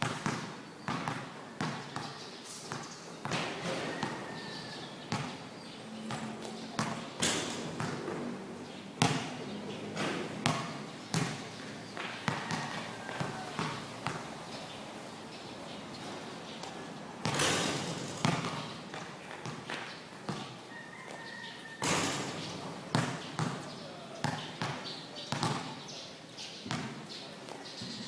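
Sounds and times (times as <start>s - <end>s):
basketball bouncing on court: 0.0s - 4.2s, 5.1s - 8.2s, 9.0s - 9.4s, 10.0s - 14.3s, 16.6s - 20.6s, 21.8s - 25.8s, 26.7s - 27.0s.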